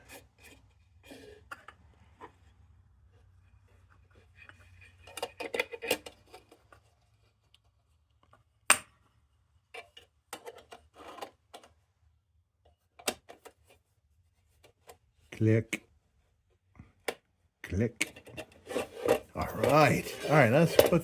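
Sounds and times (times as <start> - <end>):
metal lantern parts clattering: 18.7 - 21.0.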